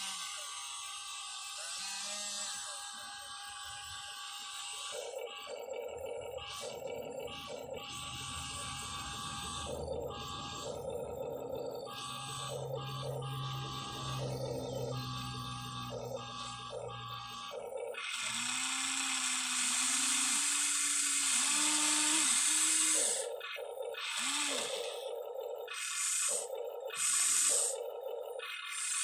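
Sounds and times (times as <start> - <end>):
small electric motors whining: 0.0 - 29.0
steady tone: 6.6 - 17.4.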